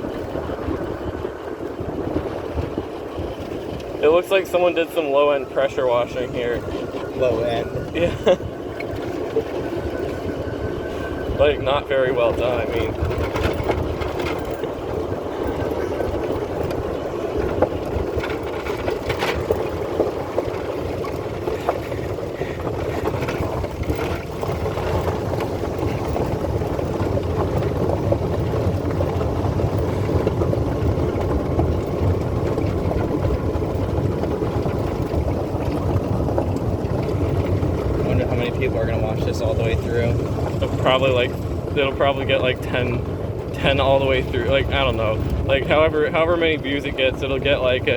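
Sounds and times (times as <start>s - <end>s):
cart knocks and rattles: 0.0s - 47.9s
golf cart driving: 0.0s - 47.9s
wind on microphone: 0.0s - 47.9s.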